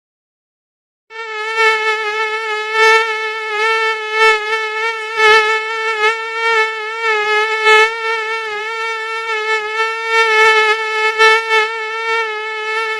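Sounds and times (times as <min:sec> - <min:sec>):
mosquito wing whine: 0:01.1 - 0:12.9.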